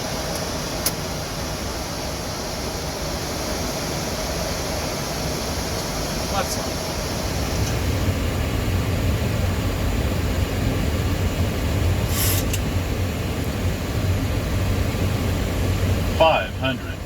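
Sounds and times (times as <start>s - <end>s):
rush of airflow: 0.0s - 16.2s
low engine hum: 0.0s - 17.0s
brief hiss: 12.0s - 12.6s.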